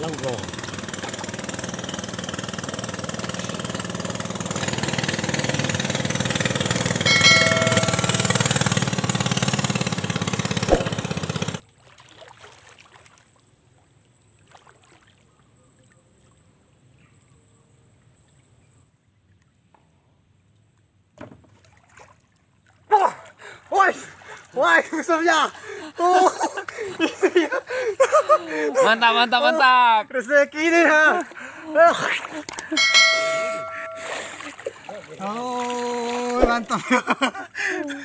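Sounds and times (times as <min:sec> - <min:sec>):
boat engine running: 0:00.0 - 0:11.6, 0:32.5 - 0:36.9
water wash: 0:04.2 - 0:09.1, 0:31.9 - 0:37.5.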